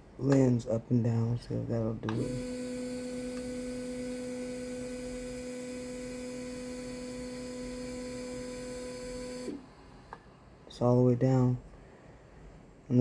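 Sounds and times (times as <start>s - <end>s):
motor electrical hum: 1.7s - 11.7s.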